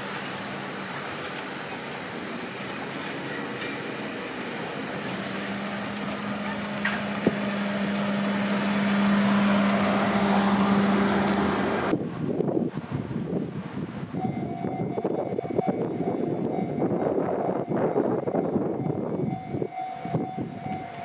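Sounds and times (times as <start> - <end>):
train rumble and hum: 0.0 - 21.0.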